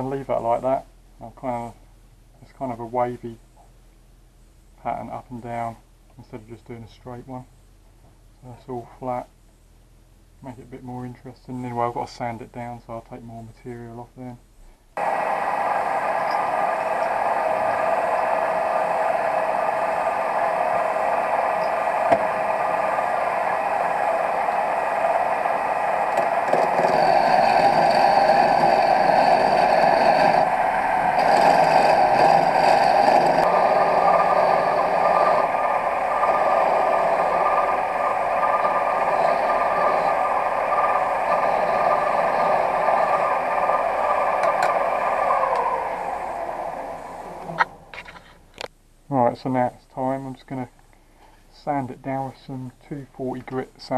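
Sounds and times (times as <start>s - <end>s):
lathe motor whine: 15.0s - 48.1s
tool scraping spinning wood: 15.0s - 48.4s.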